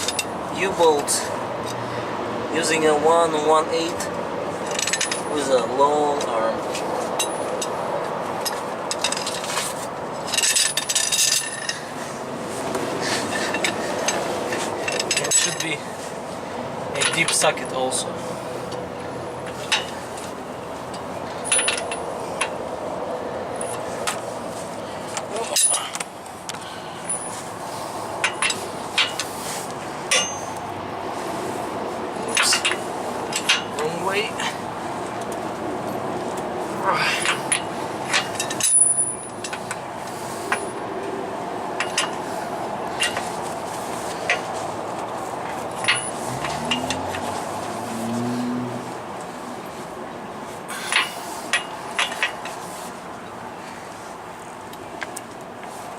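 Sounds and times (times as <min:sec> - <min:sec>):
wrench clinking on metal nuts: 0:00.0 - 0:00.4, 0:04.7 - 0:05.6, 0:10.2 - 0:11.8, 0:13.3 - 0:15.8, 0:17.0 - 0:17.6, 0:21.4 - 0:22.5, 0:25.4 - 0:26.0, 0:30.1 - 0:30.7, 0:32.2 - 0:33.9, 0:37.1 - 0:39.8, 0:45.7 - 0:47.2
steady background noise: 0:00.0 - 0:55.9
metallic clinks of wrench: 0:30.1 - 0:30.6.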